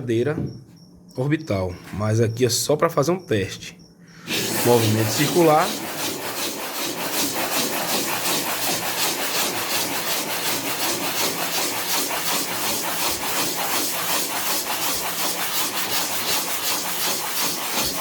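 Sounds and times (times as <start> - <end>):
sandpaper rasping on boat hull: 4.3 - 18.0.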